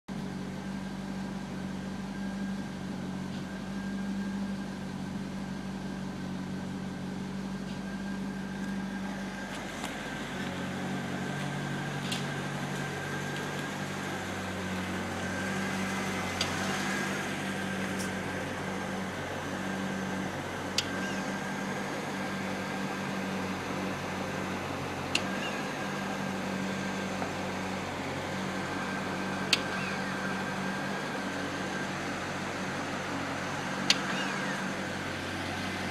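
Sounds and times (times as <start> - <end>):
car engine low hum: 0.1 - 35.9.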